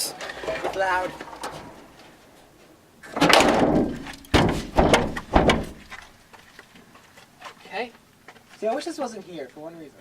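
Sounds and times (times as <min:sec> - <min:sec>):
car hood banged: 0:03.2 - 0:05.9.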